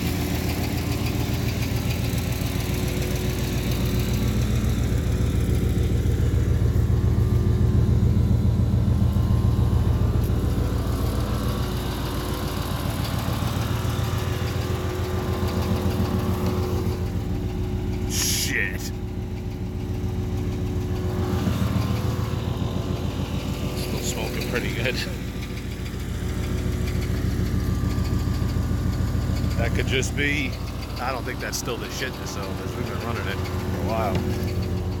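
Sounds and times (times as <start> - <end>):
truck engine running: 0.0 - 35.0.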